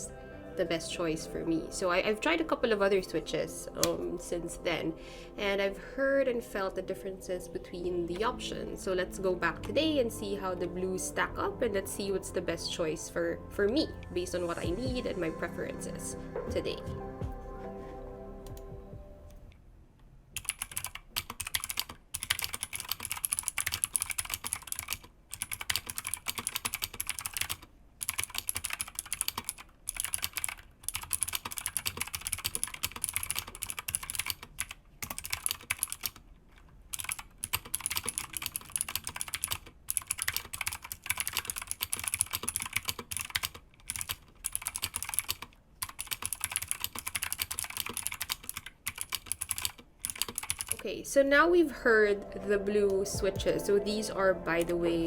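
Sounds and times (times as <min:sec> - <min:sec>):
fast typing on clicky keyboard: 0:20.4 - 0:36.2, 0:36.9 - 0:50.9.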